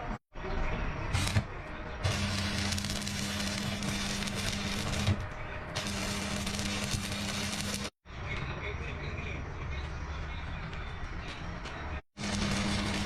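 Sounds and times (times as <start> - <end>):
welder humming: 1.1 - 8.0, 12.2 - 13.0
welding arc crackling: 1.1 - 8.0, 12.2 - 13.0.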